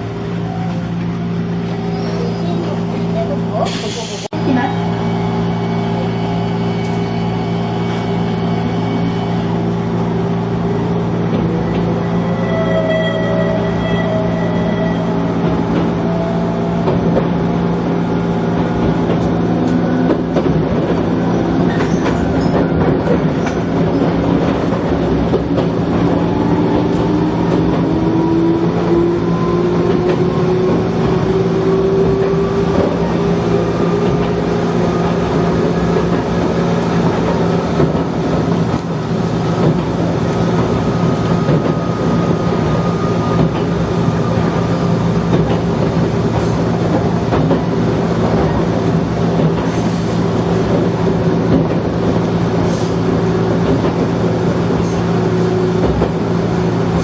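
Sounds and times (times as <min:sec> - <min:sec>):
wheels rumbling on rail: 0:00.0 - 0:57.0
train motor whine: 0:04.9 - 0:18.9.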